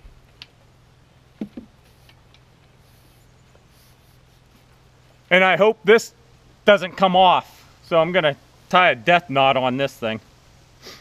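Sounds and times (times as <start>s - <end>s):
steady low hum: 0.0s - 11.0s
soft knocks: 1.4s - 1.7s.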